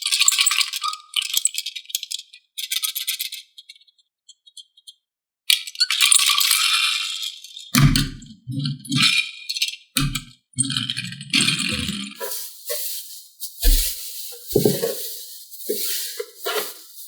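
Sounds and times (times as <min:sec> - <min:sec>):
toy pieces rattling: 0:12.2 - 0:17.0.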